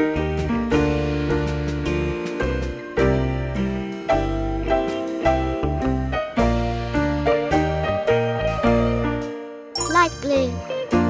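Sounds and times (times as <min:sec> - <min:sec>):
light keyboard tune: 0:09.8 - 0:10.9.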